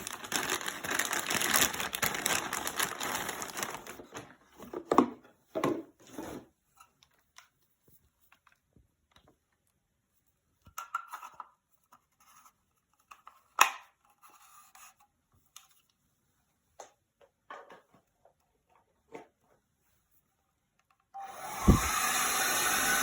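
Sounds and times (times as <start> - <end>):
handling rustles and scrapes: 0.0 - 8.7, 10.1 - 16.8.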